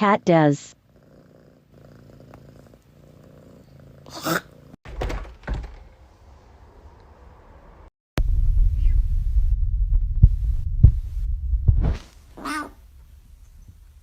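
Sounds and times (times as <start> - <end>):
cat purring: 0.8 - 4.8
low thumps: 8.2 - 12.3.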